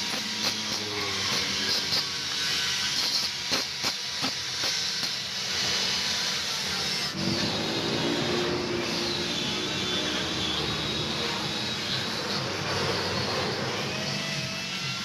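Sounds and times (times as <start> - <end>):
power tool motor running: 0.0 - 15.0.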